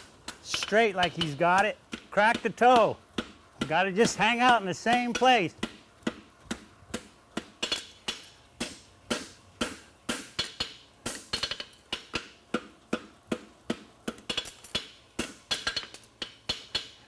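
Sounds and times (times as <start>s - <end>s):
hammer striking horseshoe on anvil: 0.3s - 17.0s.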